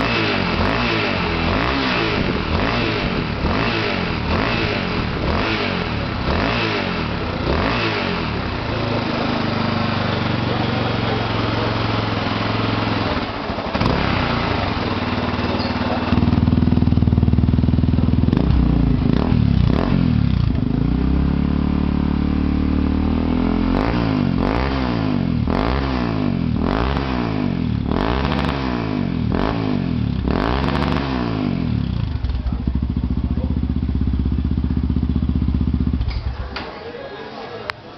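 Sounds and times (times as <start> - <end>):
motorcycle engine revving: 0.0 - 37.6.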